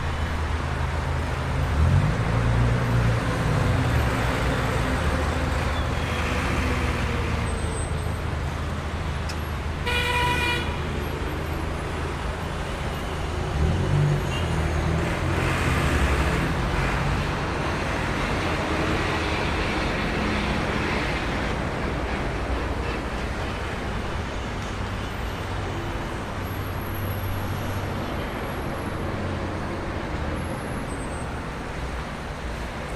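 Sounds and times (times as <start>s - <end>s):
road noise: 0.0s - 32.9s
car horn: 9.8s - 10.8s.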